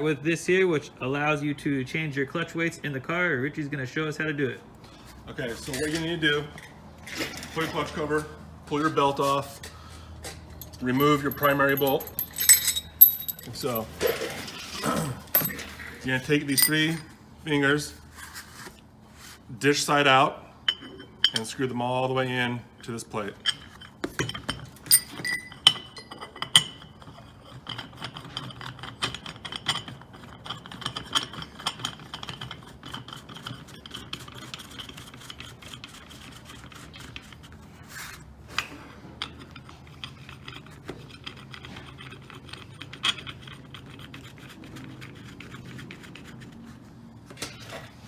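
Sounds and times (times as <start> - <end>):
low steady hum: 2.8 - 28.2
steel tool parts clinking: 10.5 - 14.3, 15.3 - 15.8, 16.4 - 17.1, 23.4 - 26.8
small metallic ticks and rubbing: 39.2 - 46.8.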